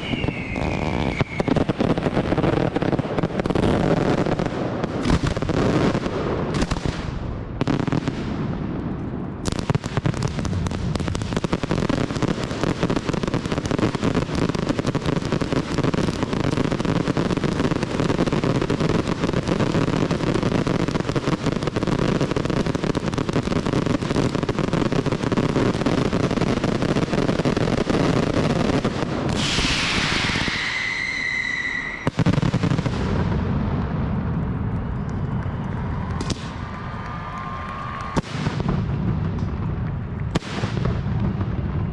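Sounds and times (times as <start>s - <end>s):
falling firework whistle: 0.0s - 2.8s, 29.3s - 33.1s
firework bangs and crackle: 0.0s - 41.9s.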